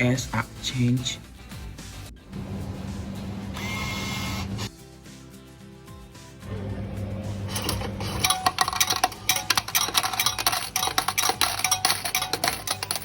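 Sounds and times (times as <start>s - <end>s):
low motor hum: 2.2s - 4.7s, 6.4s - 8.2s
metallic clicking and clattering: 7.5s - 13.0s.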